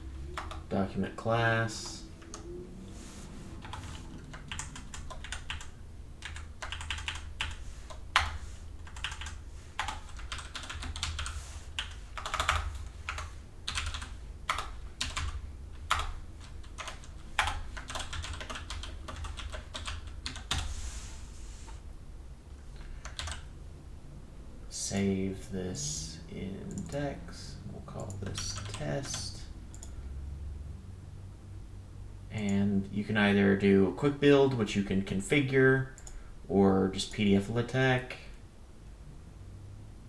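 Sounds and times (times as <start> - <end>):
low steady hum: 0.0 - 40.0
typing on computer keyboard: 3.6 - 20.7, 23.0 - 23.5, 28.0 - 29.9.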